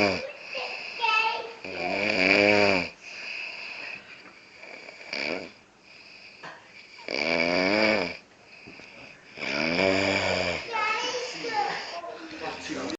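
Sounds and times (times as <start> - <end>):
woman snoring: 0.0 - 3.9, 4.6 - 5.6, 6.9 - 8.2, 9.3 - 10.7
breath sound: 0.2 - 1.5, 3.0 - 5.2, 5.8 - 7.1, 8.4 - 12.8.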